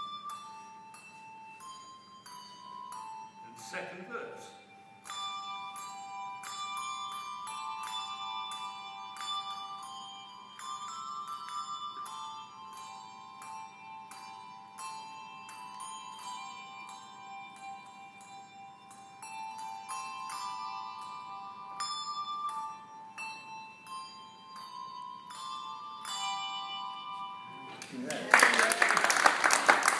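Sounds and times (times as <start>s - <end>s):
handbells ringing a melody: 0.0s - 29.9s.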